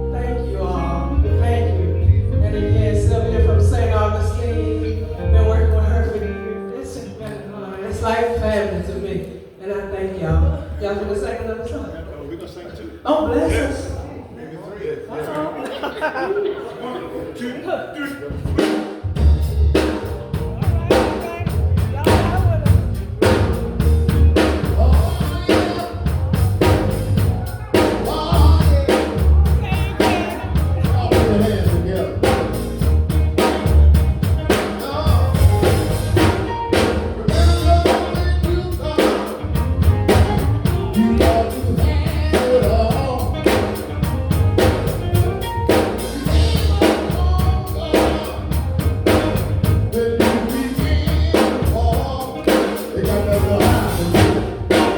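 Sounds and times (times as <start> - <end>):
bass line: 0.0 - 6.6, 18.3 - 54.9
gospel group singing: 0.0 - 8.8, 24.4 - 33.7, 34.5 - 43.9, 45.7 - 54.9
drum kit beat: 18.2 - 54.9.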